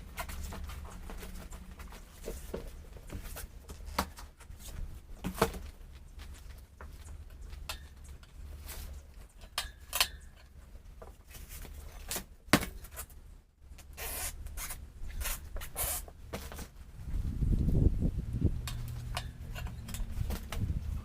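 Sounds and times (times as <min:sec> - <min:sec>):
scraping and rubbing: 0:13.8 - 0:17.4.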